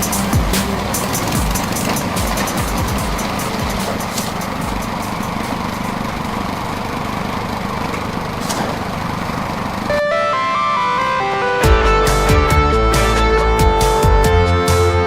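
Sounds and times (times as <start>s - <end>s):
music: 0.0s - 4.9s, 10.0s - 15.0s
small engine running: 0.0s - 10.0s.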